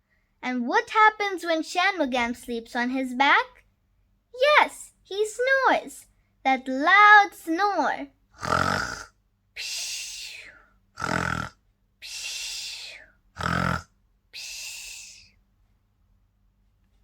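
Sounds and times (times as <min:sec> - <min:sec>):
person imitating snoring: 0:08.4 - 0:15.3.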